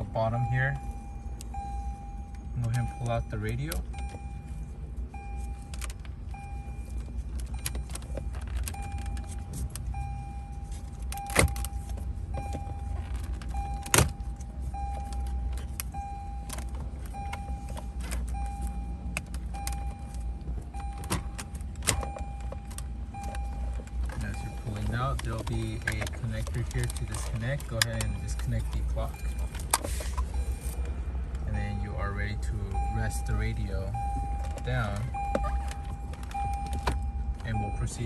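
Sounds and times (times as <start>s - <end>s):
car warning chime beeping: 0.0s - 38.0s.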